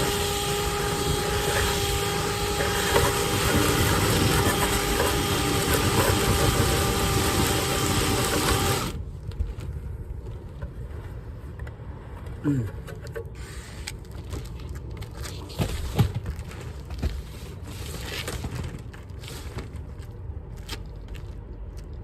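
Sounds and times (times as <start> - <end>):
motor-driven machine whining: 0.0 - 9.0.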